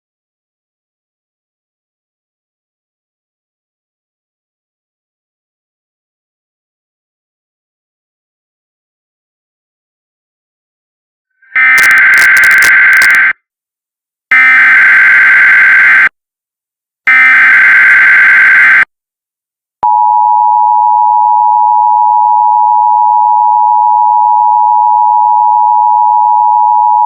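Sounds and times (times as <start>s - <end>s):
shrill digital data tones: 11.7s - 13.3s.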